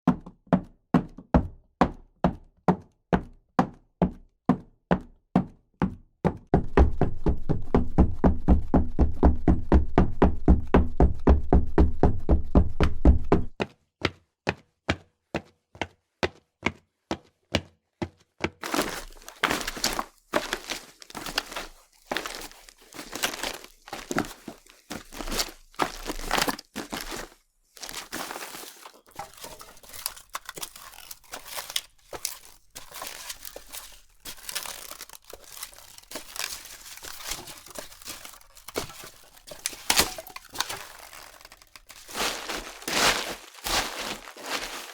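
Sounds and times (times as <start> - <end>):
running footsteps: 18.1 - 44.9
footsteps crunching on gravel: 18.6 - 44.9
footsteps walking: 18.6 - 44.9.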